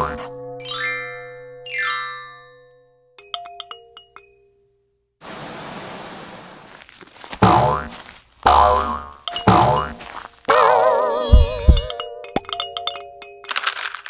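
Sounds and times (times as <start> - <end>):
tinkling chime-like pings: 0.6 - 4.7, 11.2 - 13.5
steady hiss of noise: 5.2 - 6.8.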